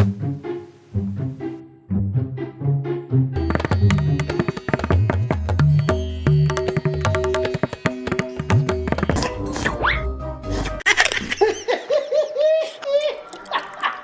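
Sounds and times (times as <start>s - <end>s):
hand-drum beat: 3.4s - 9.4s.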